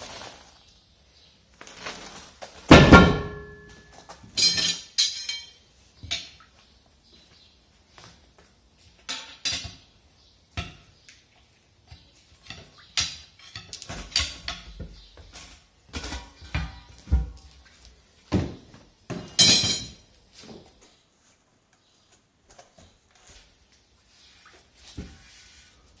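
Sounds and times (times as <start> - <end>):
pry bars clanking on metal rim: 4.4 - 5.6.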